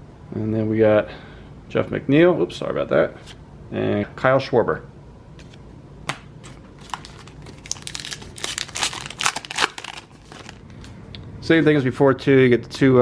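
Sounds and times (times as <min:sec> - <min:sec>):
wrapper crinkling and tearing: 0:06.4 - 0:10.9.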